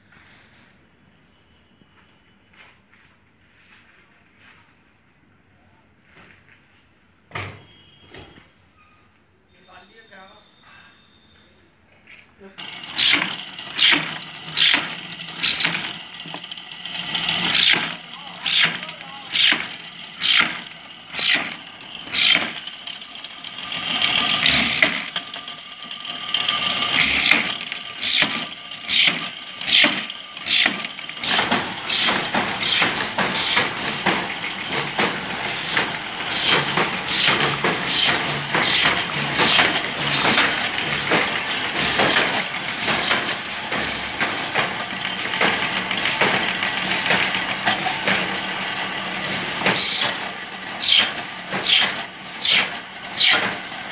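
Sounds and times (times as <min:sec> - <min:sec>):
drill boring into plastic pipe: 0:12.6 - 0:53.9
steady machine noise: 0:12.6 - 0:53.9.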